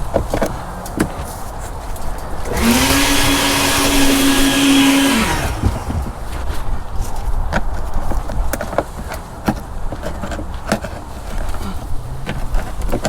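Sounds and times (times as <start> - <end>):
power tool motor whirring: 2.5 - 6.2.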